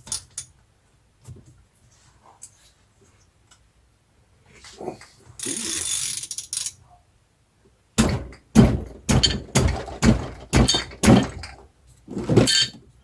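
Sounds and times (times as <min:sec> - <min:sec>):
hammer knocking on metal: 0:08.0 - 0:11.6.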